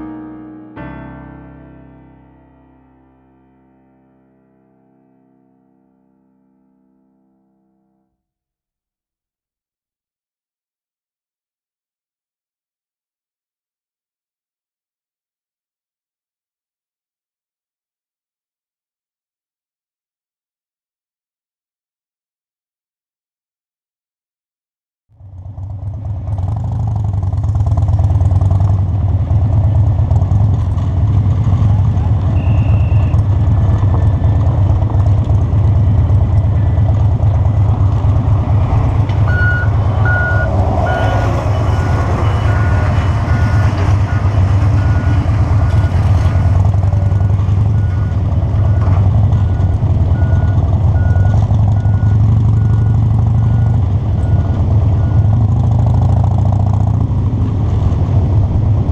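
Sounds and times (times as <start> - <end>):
vehicle engine and road rumble: 25.2 - 58.9
short high electronic beep: 32.3 - 33.2, 39.3 - 46.0.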